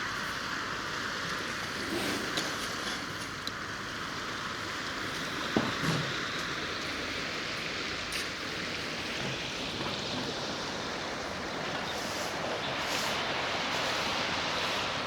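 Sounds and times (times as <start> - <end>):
waves washing along shore: 7.3 - 15.0.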